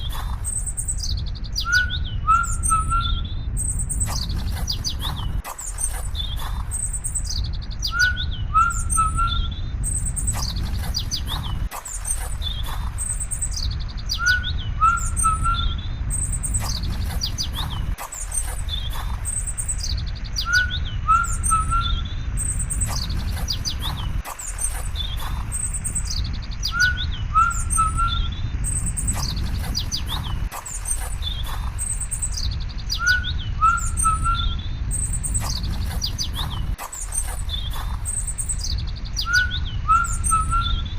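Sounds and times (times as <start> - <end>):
birds chirping and calling: 0.0 - 40.9
steady low rumble: 0.0 - 40.9.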